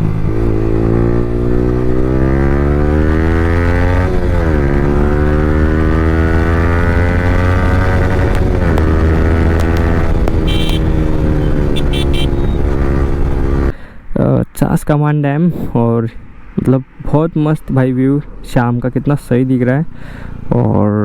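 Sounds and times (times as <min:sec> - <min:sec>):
motorcycle engine accelerating: 0:00.0 - 0:13.7.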